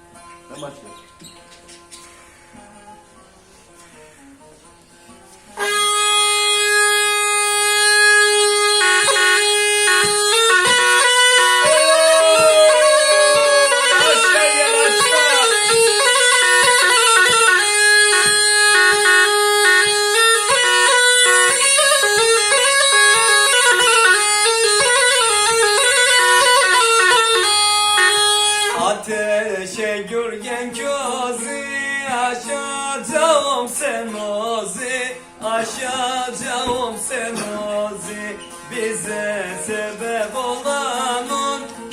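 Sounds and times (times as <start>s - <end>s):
bagpipe melody: 5.6s - 29.0s.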